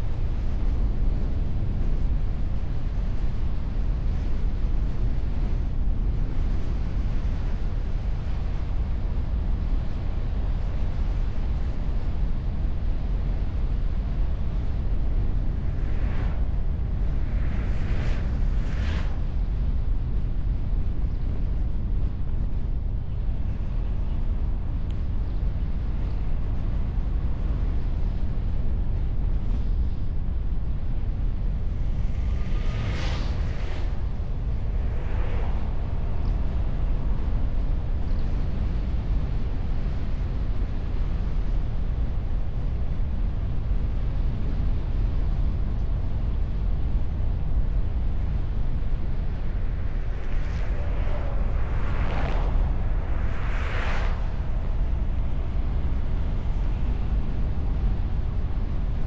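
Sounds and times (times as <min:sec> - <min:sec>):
wind and road rumble: 0:00.0 - 0:59.0
passing vehicles: 0:48.4 - 0:57.4.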